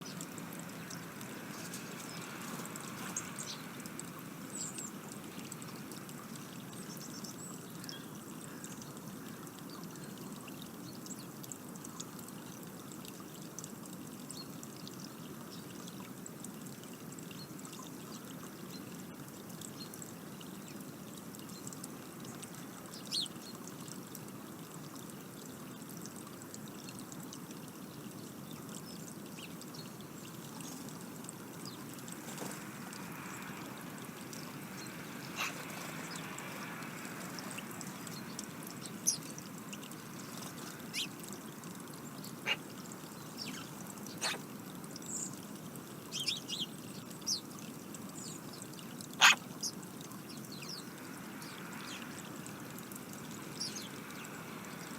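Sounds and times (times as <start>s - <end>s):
high bird chirps: 40.9s - 41.2s.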